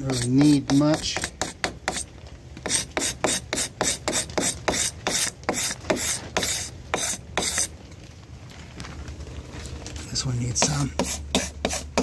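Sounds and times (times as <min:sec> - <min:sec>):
hand scraper rasping resin: 0:00.0 - 0:07.7, 0:10.6 - 0:12.0.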